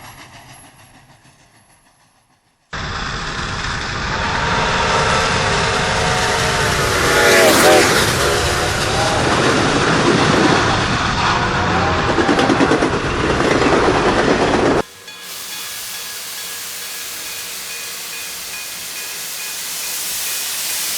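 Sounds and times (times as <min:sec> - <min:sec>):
train rumbling: 0:00.0 - 0:20.9
steam hissing: 0:02.8 - 0:11.2, 0:14.8 - 0:20.9.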